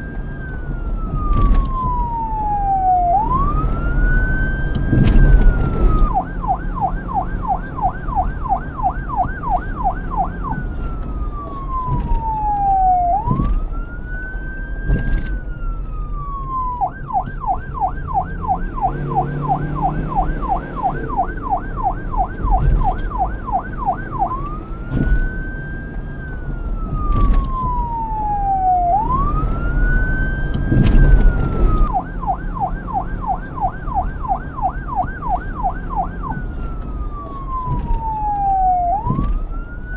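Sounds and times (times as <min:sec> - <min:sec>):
low vehicle rumble: 0:00.0 - 0:39.9
police siren wailing and yelping: 0:00.0 - 0:39.9.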